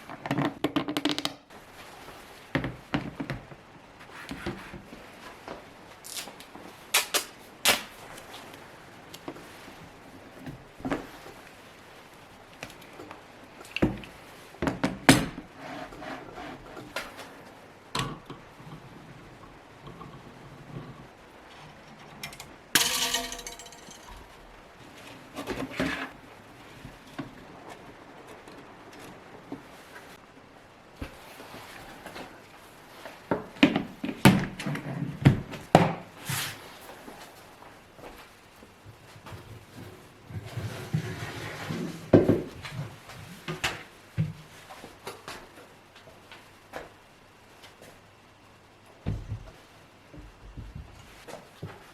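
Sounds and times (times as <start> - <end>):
hard objects knocking and clicking: 0.2 - 1.4, 21.6 - 24.4
objects knocking and clacking: 19.8 - 24.4.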